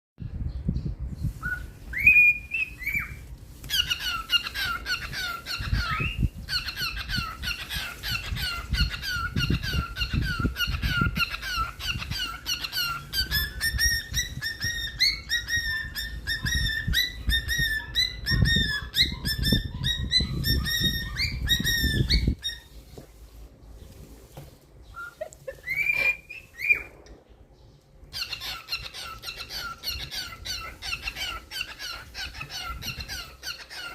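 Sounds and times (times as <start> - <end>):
bird whistling: 1.4 - 22.8, 24.8 - 27.0
rapid bird chirps: 1.4 - 22.8.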